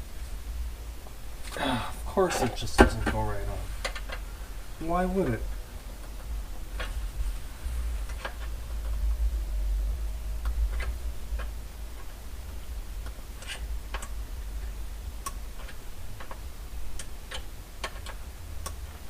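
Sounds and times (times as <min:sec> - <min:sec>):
low rumble: 0:03.4 - 0:17.0.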